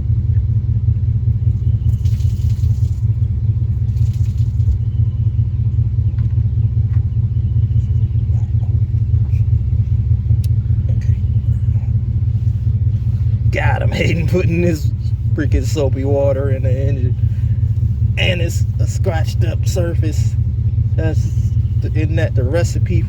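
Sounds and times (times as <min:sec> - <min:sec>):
low rumble: 0:00.0 - 0:23.0
rag rubbing on metal: 0:12.0 - 0:23.0.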